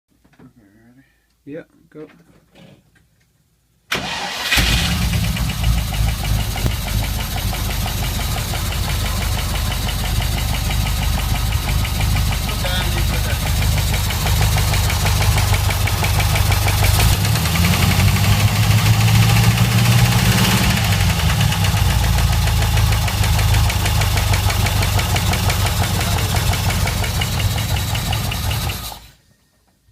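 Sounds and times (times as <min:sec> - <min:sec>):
car engine knocking: 0:05.2 - 0:29.1.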